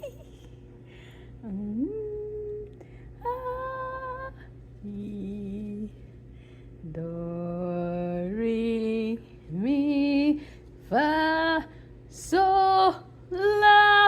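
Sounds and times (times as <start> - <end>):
woman singing long held notes: 1.4 - 6.0.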